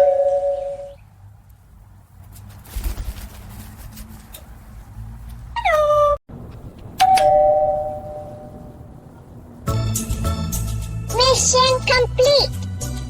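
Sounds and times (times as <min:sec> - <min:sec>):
low background rumble: 0:00.5 - 0:13.0
doorbell chime: 0:07.0 - 0:08.6.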